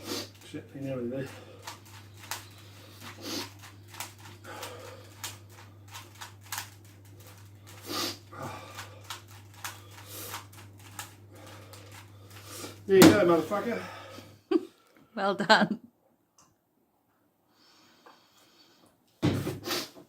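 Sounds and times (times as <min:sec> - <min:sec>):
breathy sounds: 0:02.4 - 0:05.7, 0:07.2 - 0:10.4, 0:13.4 - 0:15.0.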